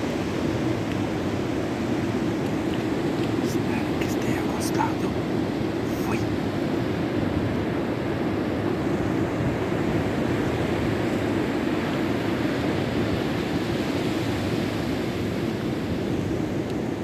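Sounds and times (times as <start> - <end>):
surf breaking and washing in: 0.0 - 17.0.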